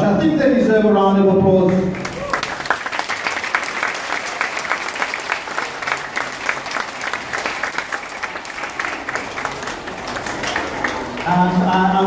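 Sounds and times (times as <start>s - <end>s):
children applauding: 1.9s - 12.0s.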